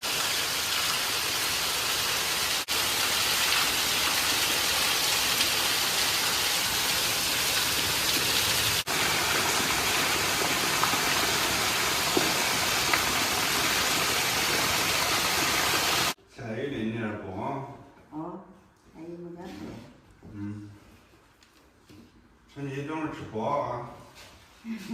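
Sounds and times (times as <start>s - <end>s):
steady rain falling: 0.0s - 16.2s.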